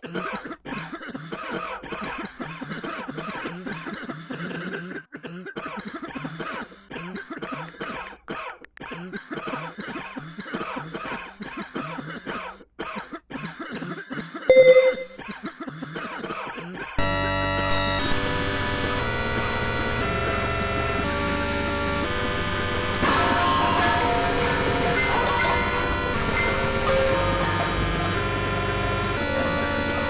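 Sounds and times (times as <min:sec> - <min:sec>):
person coughing: 0:00.0 - 0:17.0
short loud beep: 0:14.5 - 0:15.2, 0:17.7 - 0:18.2.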